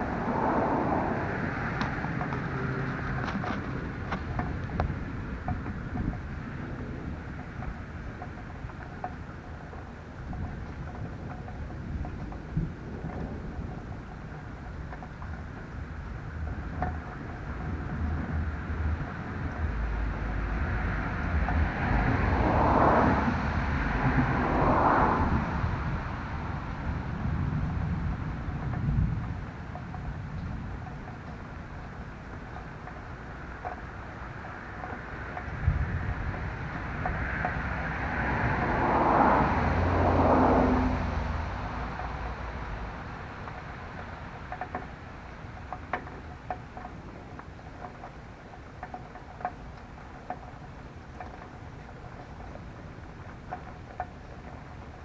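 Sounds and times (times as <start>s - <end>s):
vehicle passing by: 0.0s - 5.3s, 19.3s - 28.7s, 35.2s - 44.6s
wind rumble on microphone: 0.0s - 55.0s.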